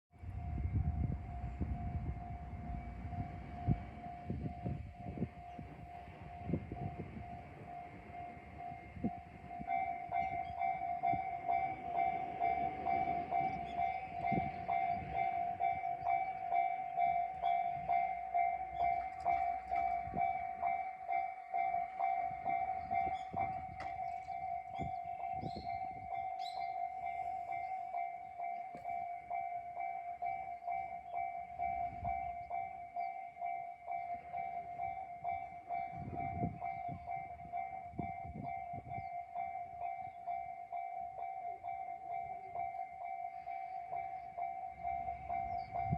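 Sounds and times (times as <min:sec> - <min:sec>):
level-crossing warning bell: 0:00.1 - 0:45.9
diesel railcar rumbling past: 0:00.2 - 0:45.9.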